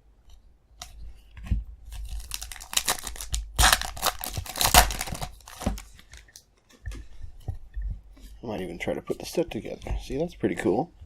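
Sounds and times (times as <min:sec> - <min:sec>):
wrapper tearing and crinkling: 0:02.0 - 0:06.4.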